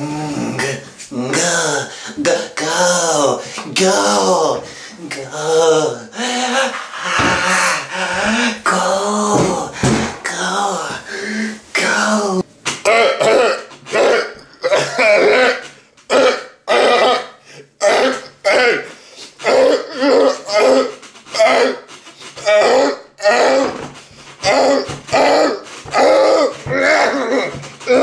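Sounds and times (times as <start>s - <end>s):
man making rough throat noises: 0.0s - 3.2s, 12.8s - 23.8s, 24.4s - 28.0s.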